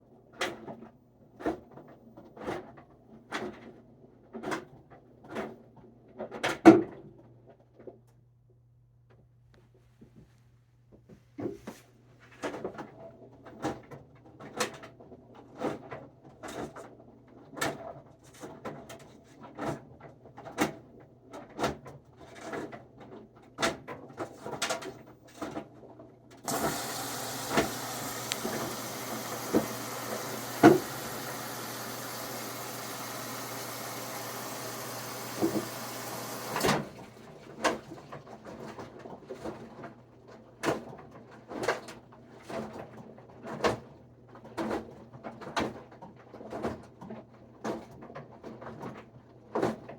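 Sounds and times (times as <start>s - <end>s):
steady rushing hiss: 26.5s - 36.6s
washing machine knocking: 26.5s - 37.0s.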